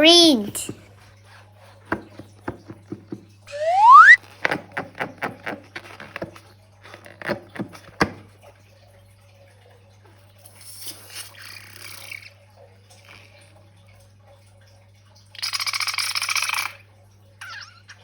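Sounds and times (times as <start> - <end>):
rubbery squeak: 3.5 - 6.3.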